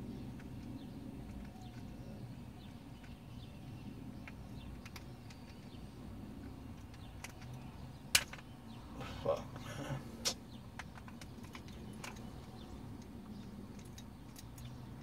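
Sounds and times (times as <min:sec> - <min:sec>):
faint bird chirps: 0:00.0 - 0:10.7
steady low rumble: 0:00.0 - 0:15.0.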